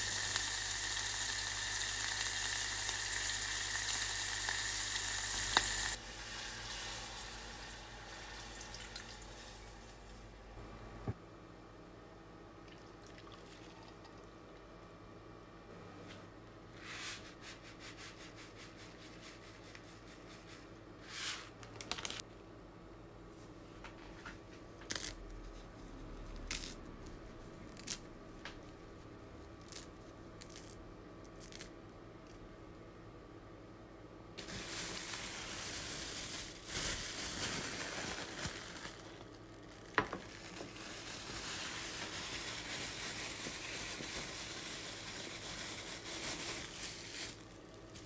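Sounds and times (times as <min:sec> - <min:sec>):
faint steady hum: 0:00.0 - 0:48.0.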